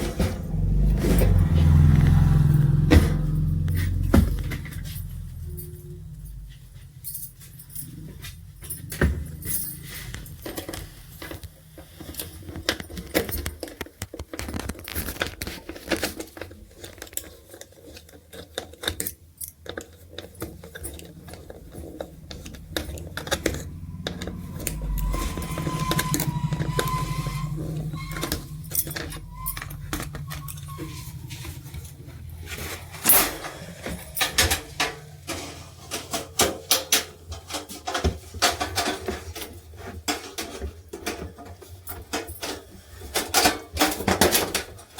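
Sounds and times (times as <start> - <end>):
low hum: 0.0 - 11.4, 20.8 - 36.1.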